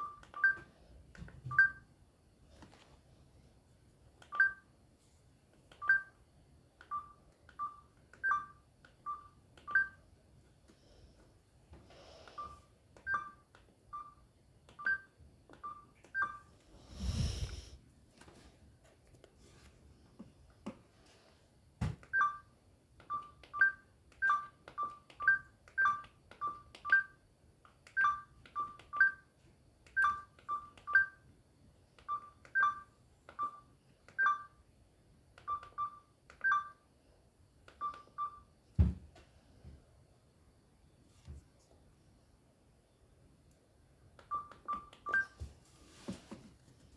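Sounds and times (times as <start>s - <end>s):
phone key beeps: 0.0s - 0.7s, 1.5s - 1.9s, 4.3s - 4.7s, 5.8s - 6.2s, 6.8s - 10.0s, 12.3s - 16.5s, 22.1s - 27.2s, 27.9s - 29.3s, 29.9s - 31.2s, 32.0s - 34.6s, 35.4s - 36.8s, 37.7s - 38.5s, 44.2s - 45.4s.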